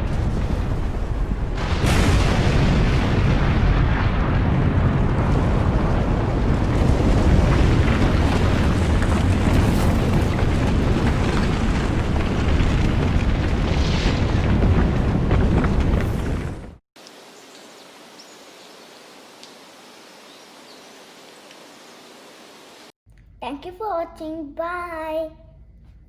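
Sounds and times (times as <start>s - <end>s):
deep rumbling roar with crackles: 0.0s - 16.8s.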